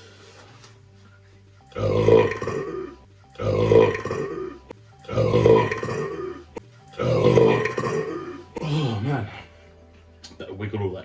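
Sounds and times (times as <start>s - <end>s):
man burping loudly: 1.8s - 9.2s.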